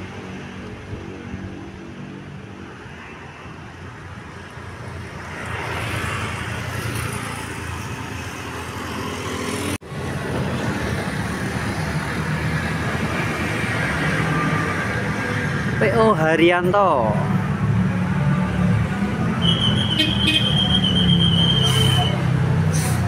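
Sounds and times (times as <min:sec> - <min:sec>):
bus engine running: 0:07.1 - 0:16.2, 0:17.0 - 0:23.0.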